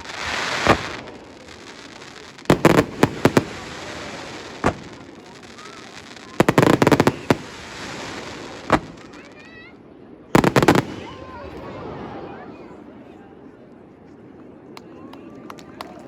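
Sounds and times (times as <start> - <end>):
fireworks bangs: 0.0 - 9.4, 10.4 - 12.2.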